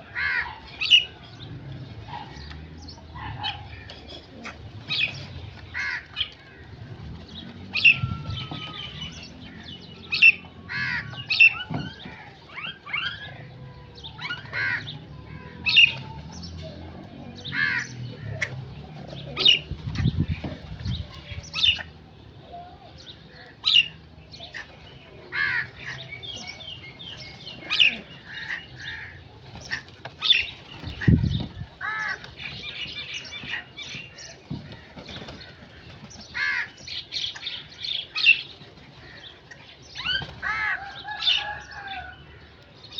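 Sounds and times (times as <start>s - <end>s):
crows cawing: 0.1s - 0.7s, 5.7s - 6.9s, 7.9s - 12.5s, 14.6s - 15.5s, 17.5s - 18.5s, 25.3s - 26.1s, 27.7s - 29.8s, 31.8s - 32.9s, 34.2s - 36.9s, 40.4s - 42.5s.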